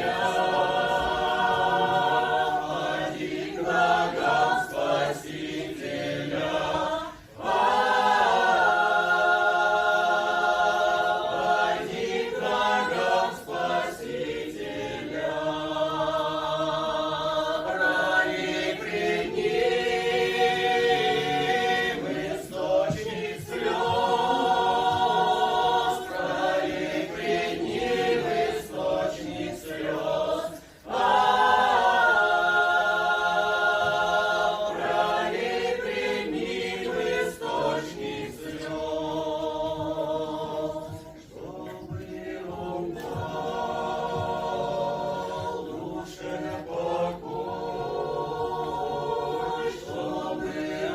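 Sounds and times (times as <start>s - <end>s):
choir singing: 0.0s - 50.9s.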